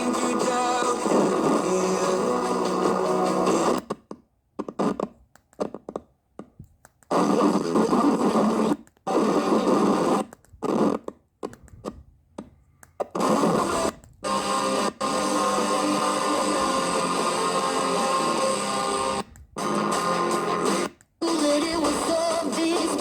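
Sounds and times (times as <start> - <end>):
radio static bursts: 0.0 - 4.0, 7.1 - 11.1, 13.0 - 23.0.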